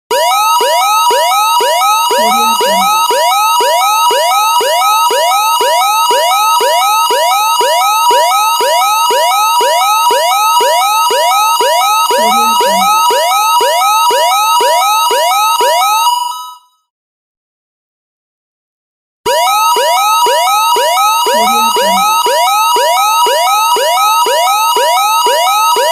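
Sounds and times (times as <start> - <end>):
electronic two-tone alert warble: 2.1 - 3.1, 12.1 - 13.1, 21.3 - 22.2.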